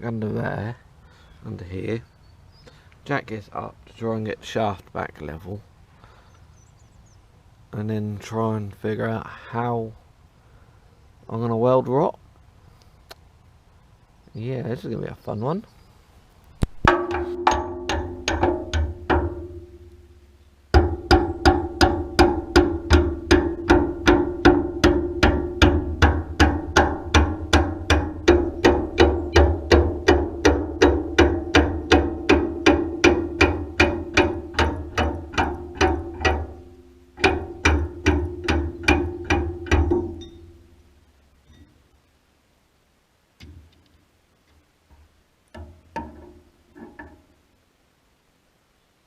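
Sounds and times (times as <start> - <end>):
metal-on-metal strikes ringing: 16.9 - 40.8.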